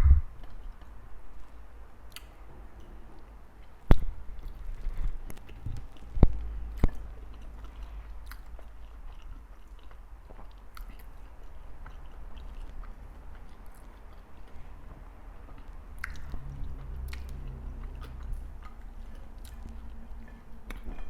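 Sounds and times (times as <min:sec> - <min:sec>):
chewing and biting: 0:03.6 - 0:21.0.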